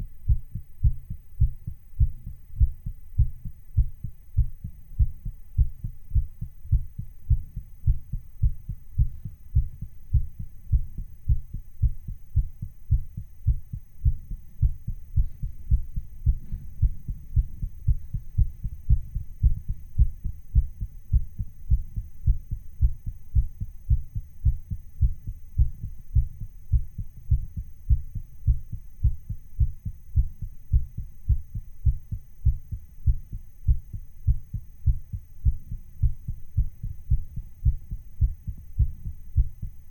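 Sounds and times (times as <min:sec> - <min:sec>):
fast heartbeat thumps: 0:00.0 - 0:39.9.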